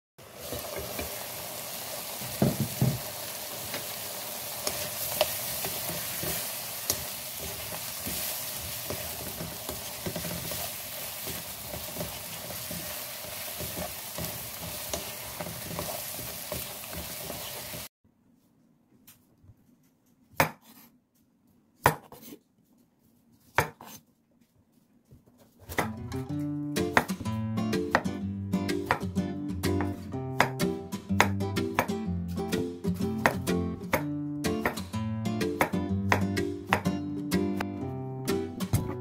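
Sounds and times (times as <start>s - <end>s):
zucchini sizzling in oil: 0.2s - 17.9s
utensil scraping a pan: 4.6s - 17.9s.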